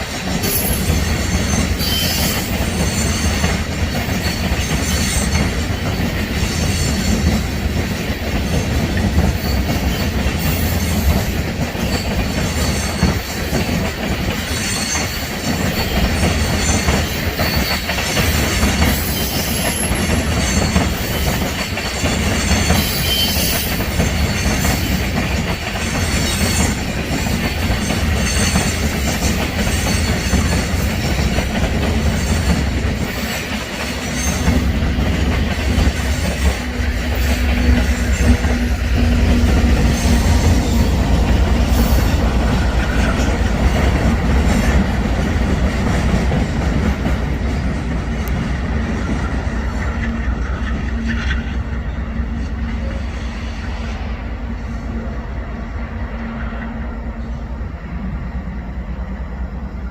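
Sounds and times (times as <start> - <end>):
train wheels clattering over rail joints: 0.0 - 51.6
low train rumble: 0.0 - 59.9
high-pitched wheel squeal: 0.4 - 3.4, 14.4 - 24.9.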